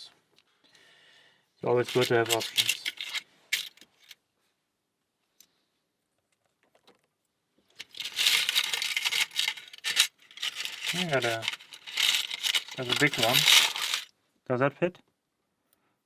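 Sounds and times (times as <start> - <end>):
small metal tools rattling: 1.7 - 4.2, 7.8 - 14.1.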